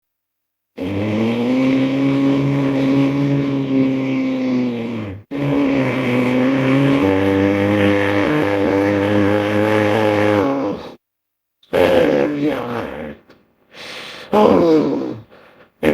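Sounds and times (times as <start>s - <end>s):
low creature roars: 0.8s - 11.0s, 11.7s - 13.2s.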